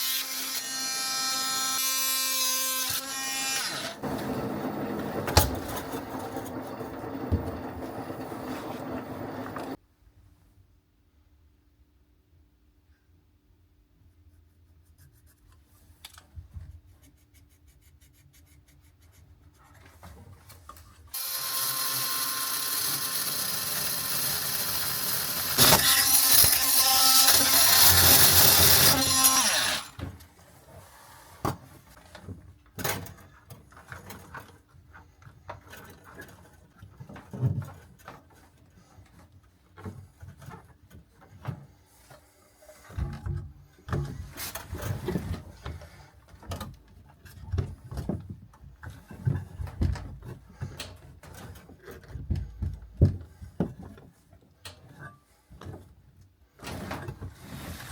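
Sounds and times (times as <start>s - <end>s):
power tool whining: 3.5s - 9.8s, 21.2s - 30.0s.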